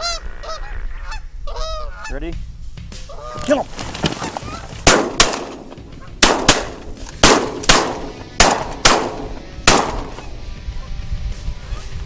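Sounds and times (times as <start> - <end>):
shotgun blasts: 4.8 - 10.3.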